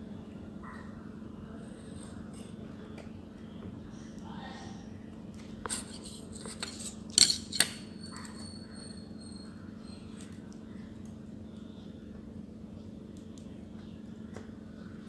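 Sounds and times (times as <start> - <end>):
metal tools clicking and clinking: 5.8 - 8.6.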